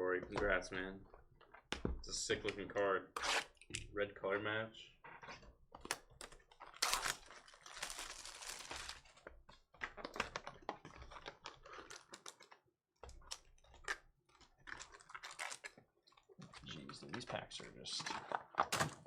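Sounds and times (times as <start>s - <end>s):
wrapper crinkling: 5.9s - 9.2s, 14.6s - 16.3s.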